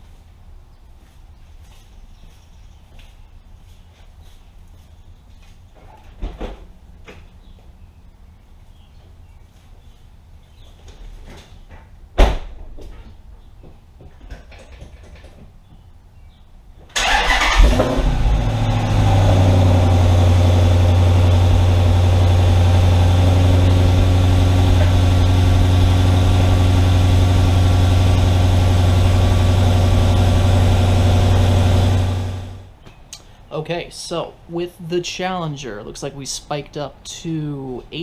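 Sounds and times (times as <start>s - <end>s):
starter cranking: 17.0s - 18.4s
car engine idling: 17.0s - 32.7s.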